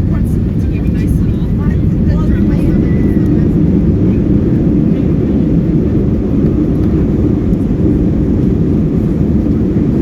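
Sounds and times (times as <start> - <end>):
airliner cabin engine rumble: 0.0 - 10.0.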